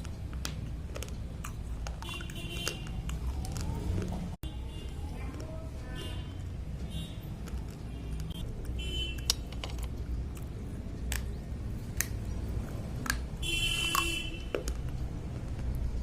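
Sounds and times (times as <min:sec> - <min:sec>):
pencils crunched by teeth: 0:00.0 - 0:04.4.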